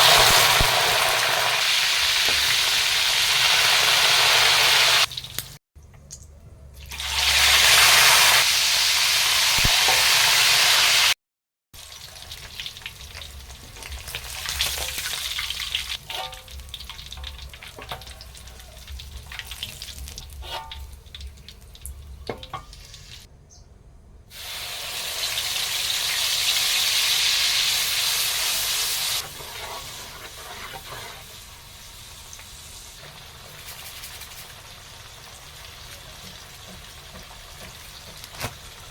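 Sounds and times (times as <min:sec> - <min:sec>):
food sizzling in hot oil: 0:00.0 - 0:05.6, 0:06.9 - 0:11.2, 0:11.8 - 0:23.3, 0:24.3 - 0:38.9
utensil clicking and scraping pan: 0:17.2 - 0:21.6, 0:29.2 - 0:31.4.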